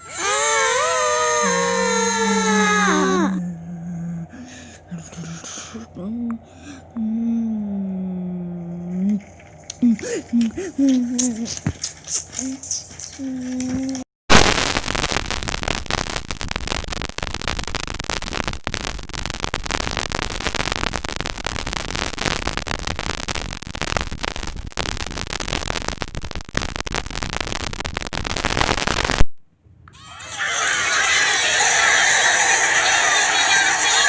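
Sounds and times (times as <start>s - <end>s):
crackly static noise: 8.6s - 34.0s.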